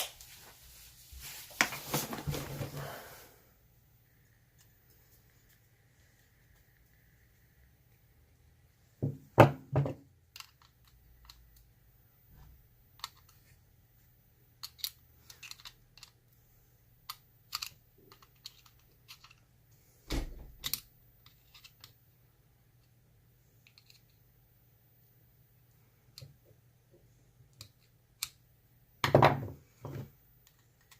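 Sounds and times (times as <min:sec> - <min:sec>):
small metal tools clicking: 0:14.6 - 0:16.2.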